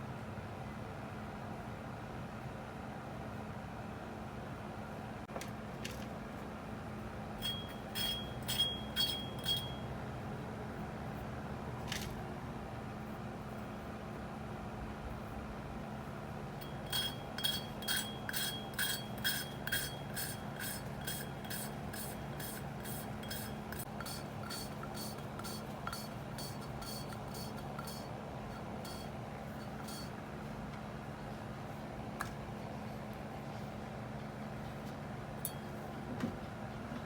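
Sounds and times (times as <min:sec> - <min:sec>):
steady low hum: 0:00.0 - 0:36.9
rhythmic scraping on metal: 0:07.4 - 0:09.9, 0:16.5 - 0:30.3.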